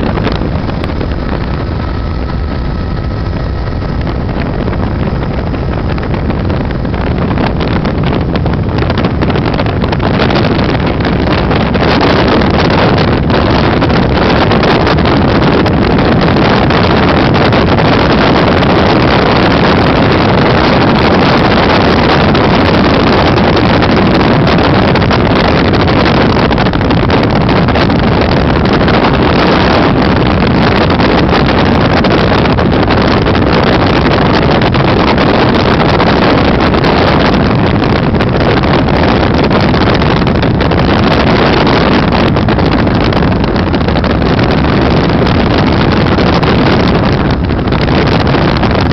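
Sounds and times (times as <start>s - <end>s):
helicopter engine and rotors: 0.0s - 48.9s.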